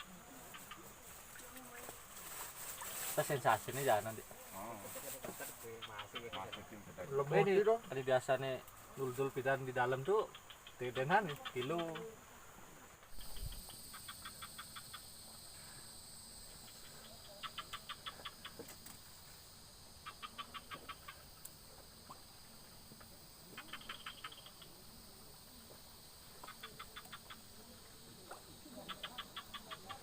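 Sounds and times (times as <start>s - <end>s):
small animal rapid chirps: 9.8s - 12.2s, 13.0s - 15.3s, 16.6s - 19.0s, 20.0s - 21.5s, 23.4s - 24.8s, 26.4s - 27.6s, 28.3s - 30.0s.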